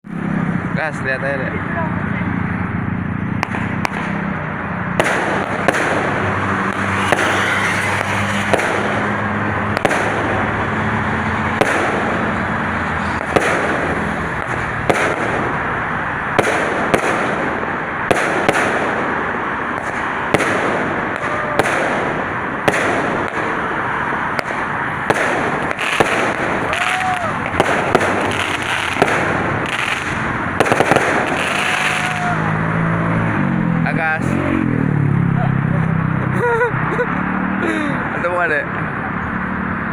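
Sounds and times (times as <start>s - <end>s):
fireworks bangs: 2.8s - 32.6s
fireworks crackle: 3.4s - 4.2s, 4.9s - 10.6s, 11.4s - 12.6s, 13.2s - 15.7s, 16.3s - 23.7s, 24.3s - 32.4s.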